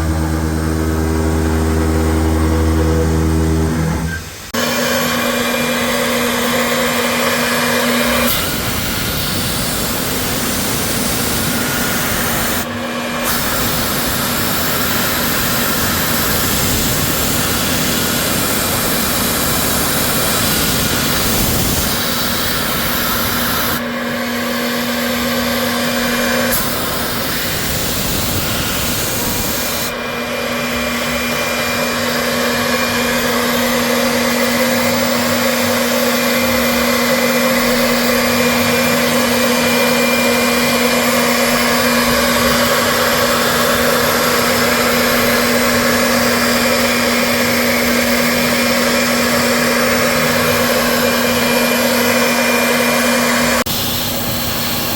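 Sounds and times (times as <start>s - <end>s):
milling spindle cutting steel: 3.2s - 54.9s.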